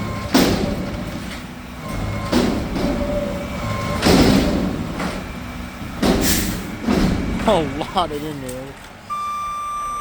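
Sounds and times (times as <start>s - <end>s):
garbage truck running: 0.0s - 10.0s
heavy bangs: 0.1s - 7.8s.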